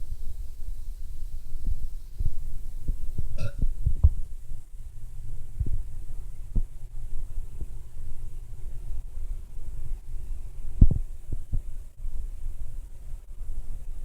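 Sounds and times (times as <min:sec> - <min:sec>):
steady low rumble: 0:00.0 - 0:14.0
woman burping: 0:03.4 - 0:03.6.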